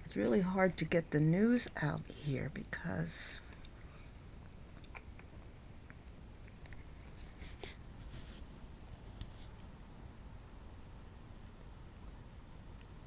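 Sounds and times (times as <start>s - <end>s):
low steady hum: 0.0s - 13.0s
scratchy rustles: 6.7s - 9.8s.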